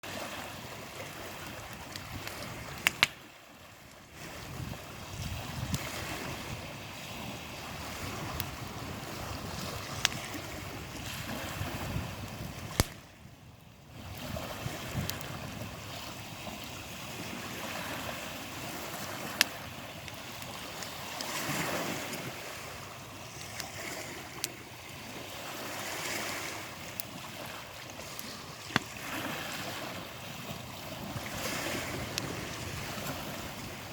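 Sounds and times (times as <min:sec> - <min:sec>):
campfire crackling: 0:00.0 - 0:33.9
wind: 0:00.0 - 0:33.9
burning wood popping: 0:01.1 - 0:03.3, 0:08.2 - 0:11.0, 0:11.8 - 0:13.1, 0:19.0 - 0:21.4, 0:23.2 - 0:24.8, 0:27.8 - 0:29.1.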